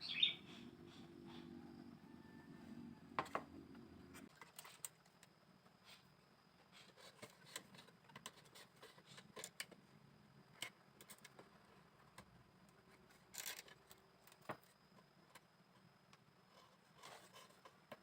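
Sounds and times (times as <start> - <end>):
scraping rustle: 16.5 - 17.9.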